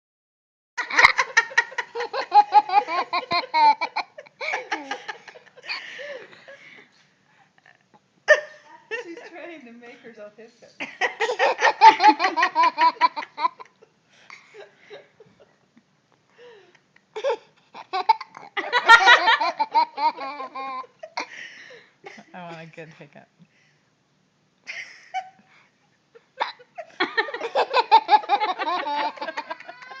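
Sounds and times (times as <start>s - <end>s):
person laughing: 0.8s - 6.3s, 26.4s - 30.0s
high-pitched child laughter: 26.4s - 30.0s.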